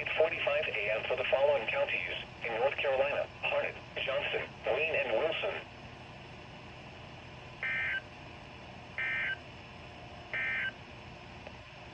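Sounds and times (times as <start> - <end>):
radio hiss: 0.0 - 5.8.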